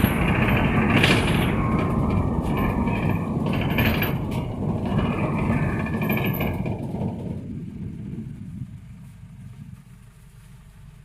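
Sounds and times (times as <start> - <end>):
mechanical rattling: 0.0 - 8.8
bus engine and road rumble: 0.0 - 11.0.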